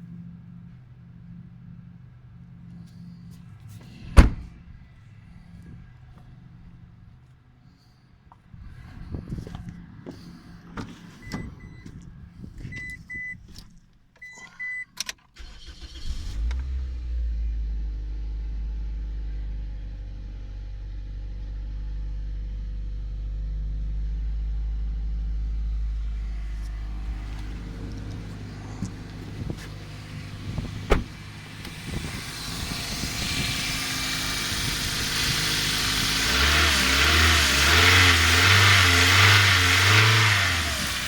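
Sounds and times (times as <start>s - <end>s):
car engine starting and idling: 8.3s - 41.0s.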